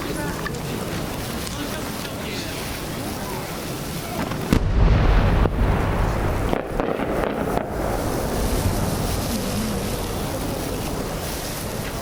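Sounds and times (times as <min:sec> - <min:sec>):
sharp firework cracks: 0:00.0 - 0:12.0
firework shell booming: 0:04.0 - 0:12.0.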